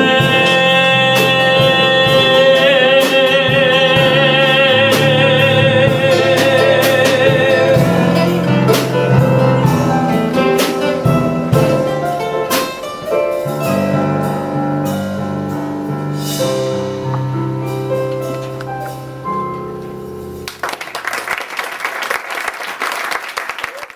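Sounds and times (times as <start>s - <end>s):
live band playing: 0.0s - 21.0s
applause: 20.5s - 23.9s.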